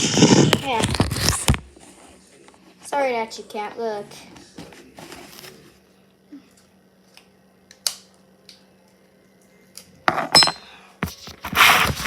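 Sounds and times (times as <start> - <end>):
metallic ring: 10.3 - 10.6.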